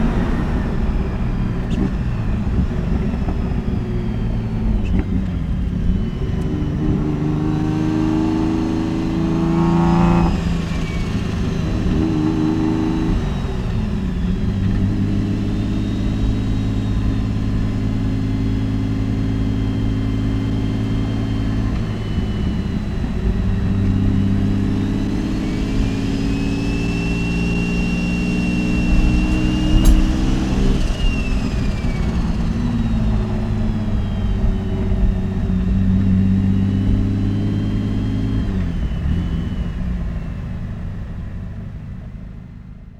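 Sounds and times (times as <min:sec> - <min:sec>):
car engine accelerating: 0:00.0 - 0:42.9
sharp click: 0:28.9 - 0:31.4.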